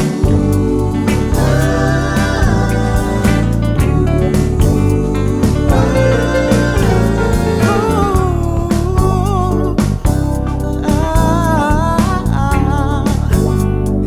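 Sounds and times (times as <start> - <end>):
wavering melodic voice: 0.0 - 9.8
tango song with guitar: 0.0 - 14.0.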